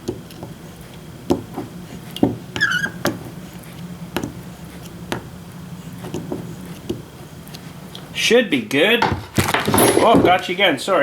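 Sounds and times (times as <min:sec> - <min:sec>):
brief squeak: 0:02.6 - 0:03.0.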